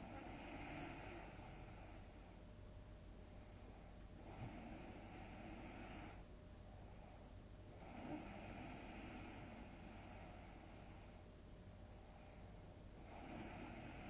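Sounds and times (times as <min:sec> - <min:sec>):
person snoring faintly: 0:00.0 - 0:02.4, 0:07.8 - 0:11.2, 0:13.0 - 0:14.0.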